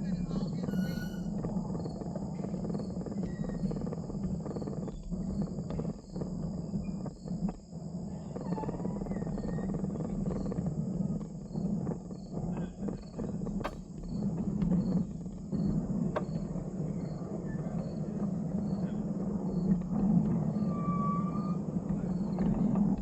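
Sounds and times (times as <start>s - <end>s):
train rumbling: 0.0s - 2.9s, 12.6s - 23.0s
short squeals: 0.5s - 1.3s.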